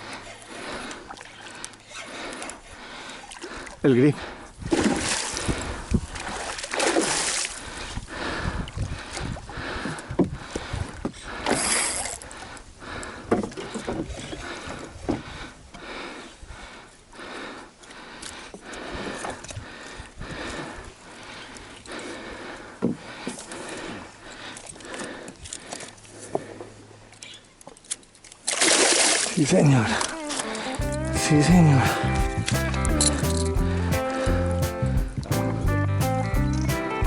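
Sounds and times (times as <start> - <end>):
water splashing: 4.7 - 7.8, 28.3 - 33.3.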